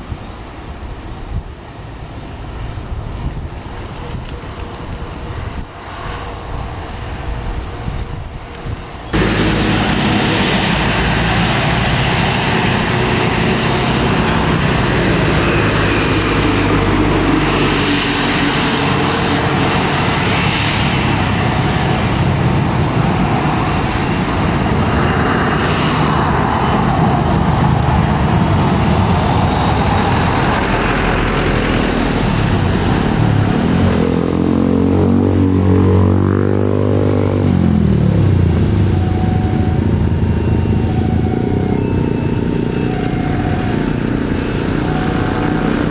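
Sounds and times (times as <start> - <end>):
jet engines roaring: 0.0 - 45.9
engine tone falling in pitch: 9.1 - 45.9.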